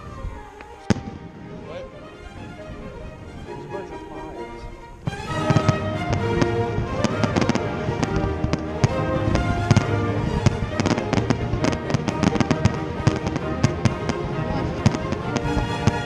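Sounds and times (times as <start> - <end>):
background music with held notes: 0.0 - 16.0
fireworks popping and crackling: 5.0 - 16.0.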